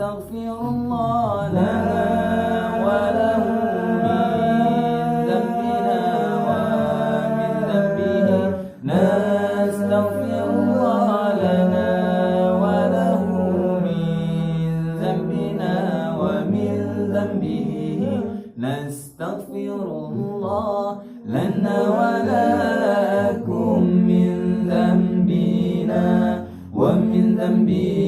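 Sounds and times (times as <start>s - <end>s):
vocal group singing: 0.0s - 28.0s.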